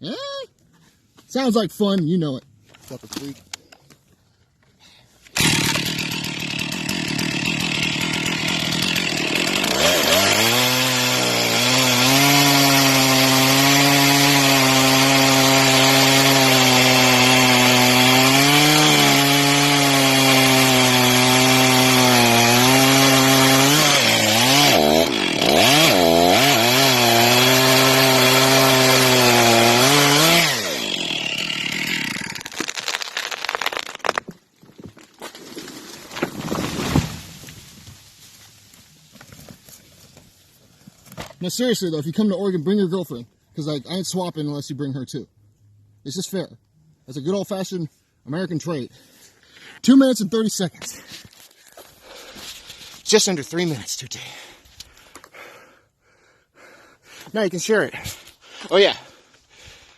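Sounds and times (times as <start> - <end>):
chainsaw running at high revs: 5.4 - 32.6.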